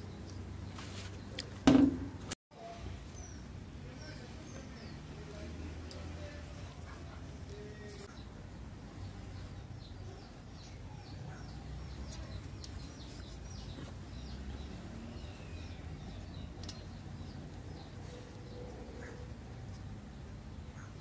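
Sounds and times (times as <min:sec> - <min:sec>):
small bird chirping: 0:09.0 - 0:21.0.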